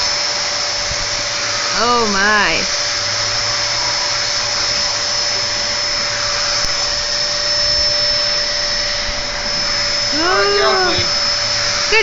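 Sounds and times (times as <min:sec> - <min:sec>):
vacuum cleaner whining: 0:00.0 - 0:12.0.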